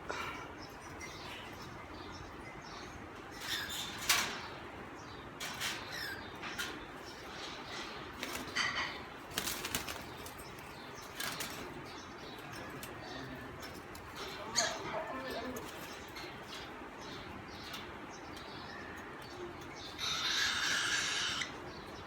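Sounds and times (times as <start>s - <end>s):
parrots flapping wings: 8.1s - 11.8s.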